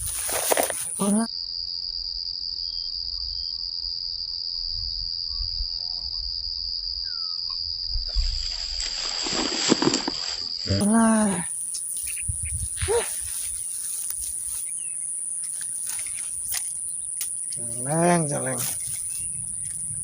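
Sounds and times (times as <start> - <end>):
insects droning: 0.0 - 20.0.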